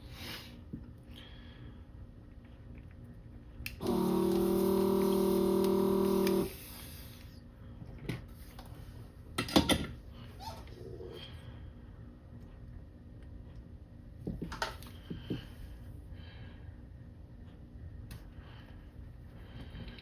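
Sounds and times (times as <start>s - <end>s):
small electric motor buzzing: 3.8s - 6.8s.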